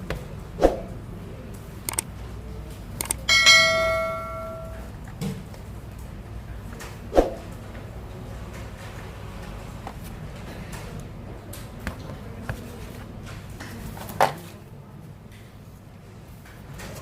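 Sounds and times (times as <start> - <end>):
sharp clicks: 1.9 - 2.1, 3.0 - 3.3
small metal object ringing: 3.3 - 4.9.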